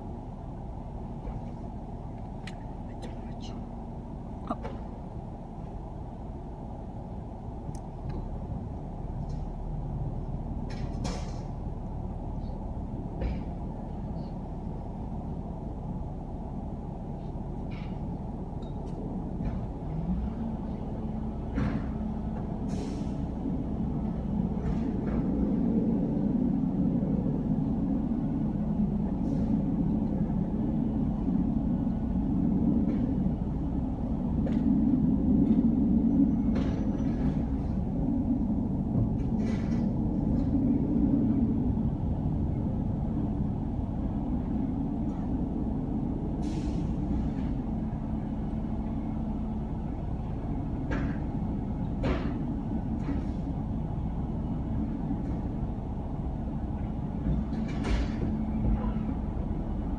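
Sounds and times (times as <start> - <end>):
air brake hisses: 22.7 - 23.2, 46.4 - 47.0.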